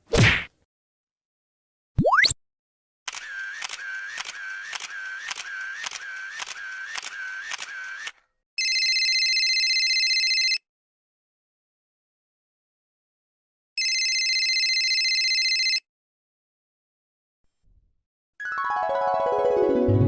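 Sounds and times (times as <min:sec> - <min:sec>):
sharp mechanical clicks: 0:03.1 - 0:08.2.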